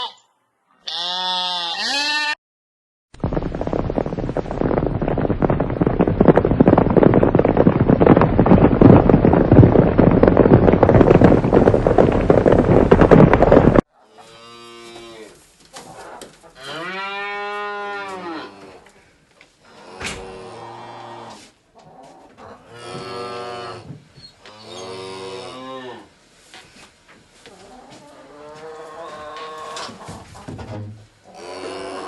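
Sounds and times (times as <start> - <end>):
sheep bleating: 0.8 - 2.4
cow mooing: 31.4 - 32.0.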